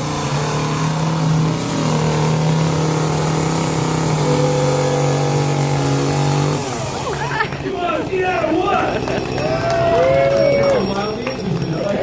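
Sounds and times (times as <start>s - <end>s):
chainsaw engine running: 0.0s - 12.0s.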